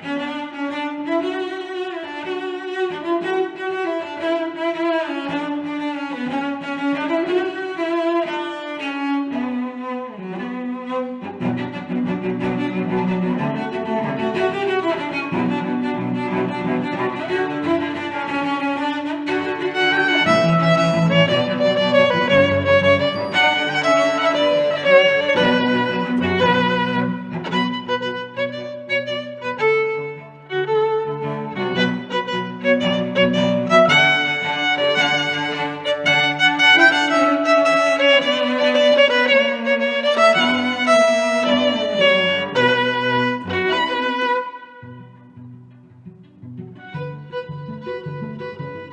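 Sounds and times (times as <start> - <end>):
bowed strings music: 0.0 - 48.9
violin melody: 0.0 - 48.9
lower accompanying notes: 19.1 - 45.5.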